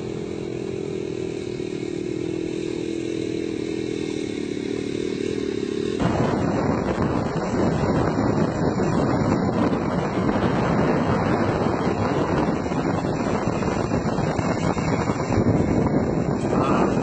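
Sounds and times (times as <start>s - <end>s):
two-stroke engine running: 0.0s - 17.0s
wind noise on microphone: 6.0s - 17.0s.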